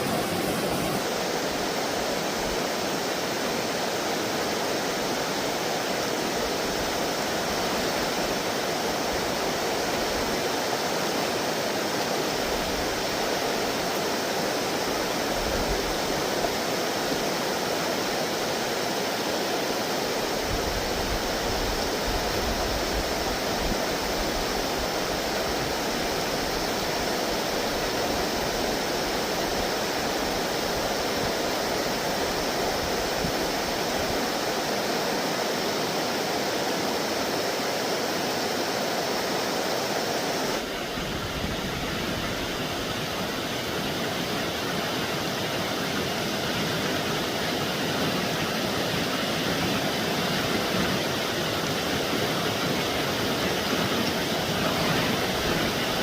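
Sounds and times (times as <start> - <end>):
stream water flowing: 0.0 - 56.0.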